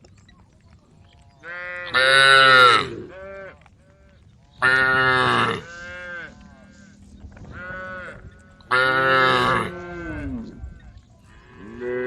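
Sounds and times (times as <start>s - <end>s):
cattle mooing: 4.6s - 6.4s, 7.4s - 10.6s.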